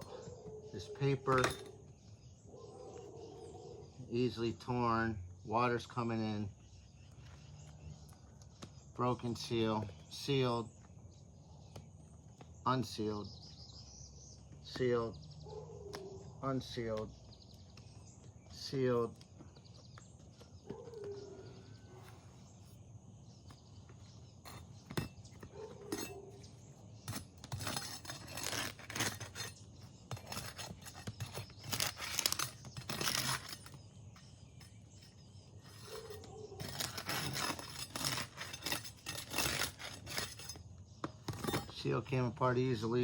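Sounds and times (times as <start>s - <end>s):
roof shingle seal crackling and scraping: 15.8s - 42.4s.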